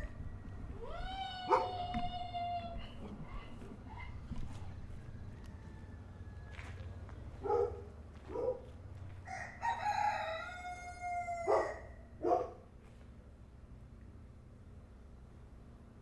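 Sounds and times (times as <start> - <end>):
rooster crowing: 4.0 - 6.9, 9.2 - 11.9.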